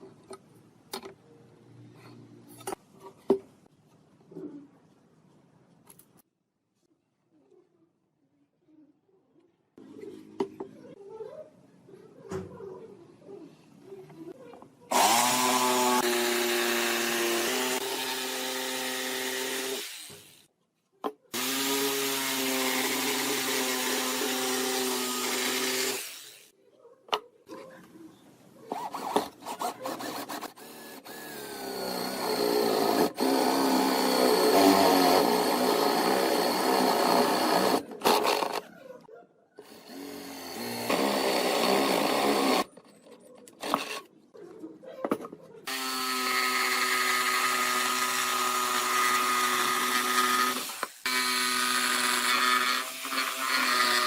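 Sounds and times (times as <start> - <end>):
drill bit working into wood: 14.9 - 20.4, 21.4 - 26.5, 29.6 - 38.6, 39.6 - 42.7, 45.7 - 54.0
electric drill motor running: 14.9 - 20.4, 21.4 - 26.5, 30.1 - 38.6, 39.6 - 42.7, 45.7 - 54.0.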